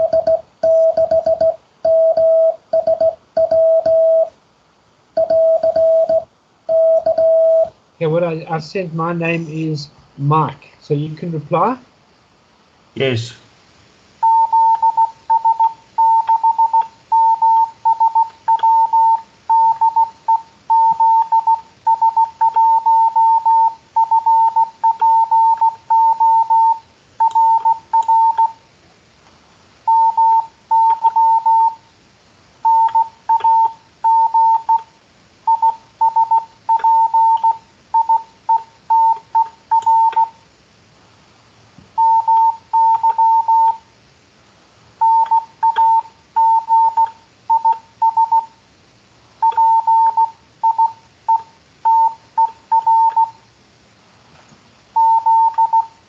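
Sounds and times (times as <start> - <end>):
morse code beeping tone: 0.0 - 4.3, 5.2 - 7.7, 14.2 - 28.6, 29.9 - 31.8, 32.6 - 34.9, 35.5 - 40.4, 42.0 - 43.8, 45.0 - 48.5, 49.4 - 53.4, 55.0 - 55.9.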